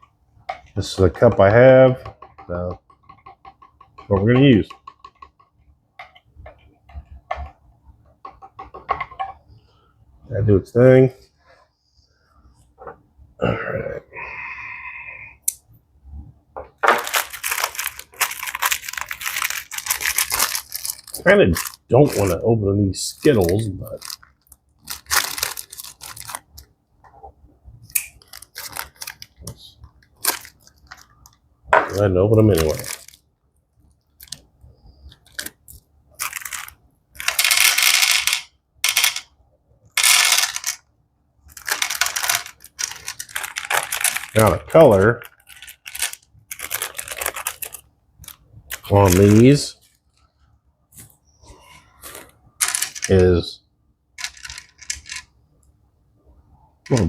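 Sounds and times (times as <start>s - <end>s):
plastic packaging crinkling: 16.9s - 22.4s, 23.1s - 26.7s, 28.0s - 33.2s, 35.1s - 38.3s, 41.5s - 50.2s.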